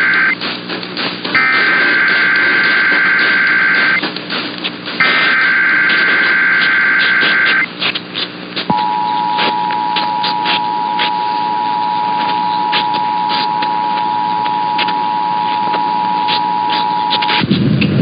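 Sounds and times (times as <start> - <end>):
two-tone alert signal: 0.0 - 0.4, 1.4 - 4.0, 5.0 - 7.7, 8.7 - 17.4
warbling digital data tones: 0.0 - 0.4, 1.4 - 4.0, 5.0 - 7.7, 8.7 - 17.5
radio static with crackles: 0.0 - 18.0.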